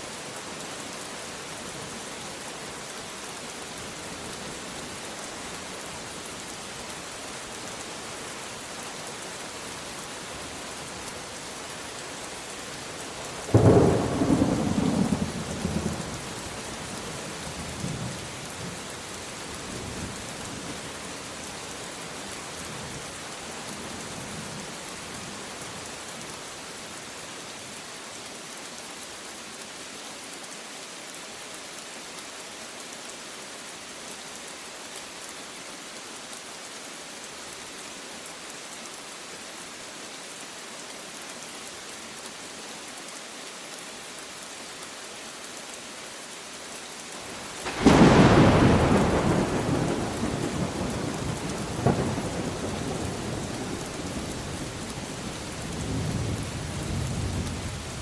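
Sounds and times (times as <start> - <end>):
steady rain falling: 0.0 - 58.0
thunder clap rumbling: 47.7 - 53.4.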